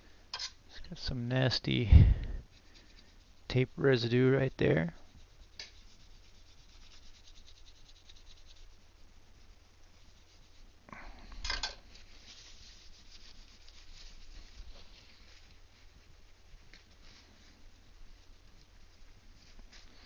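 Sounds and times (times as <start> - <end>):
rubbing strokes: 2.4 - 20.0.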